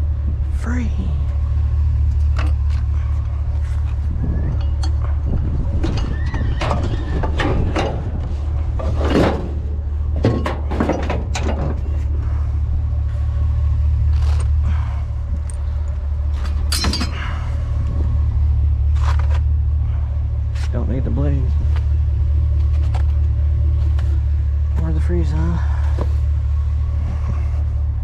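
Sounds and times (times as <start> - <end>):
truck engine humming: 0.0 - 28.0
metal scrap clanking and rattling: 4.6 - 12.2, 16.4 - 17.6.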